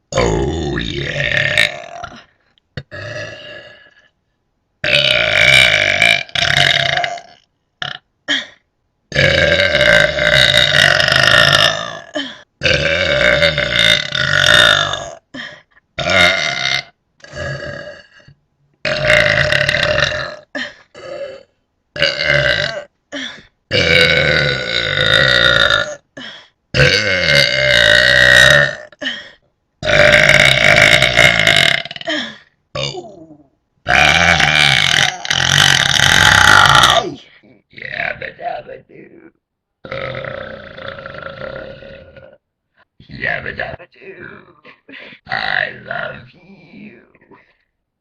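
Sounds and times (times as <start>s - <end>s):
person belching: 0.1s - 4.1s, 4.8s - 8.5s, 9.1s - 15.3s, 16.0s - 26.1s, 26.7s - 29.1s, 29.8s - 37.2s, 39.8s - 42.4s, 45.2s - 46.2s.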